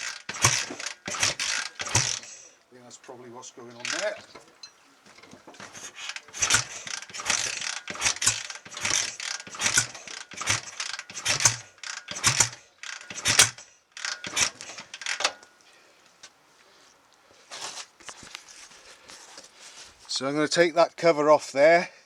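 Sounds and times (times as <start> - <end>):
motorcycle engine kickstart clattering: 0.0 - 2.4, 3.0 - 15.5.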